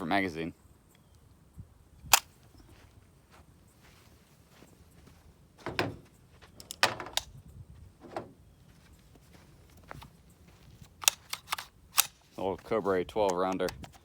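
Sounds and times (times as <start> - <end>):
metal clicks of gun magazine: 2.1 - 2.3, 6.6 - 7.3, 11.0 - 12.2, 13.2 - 14.0.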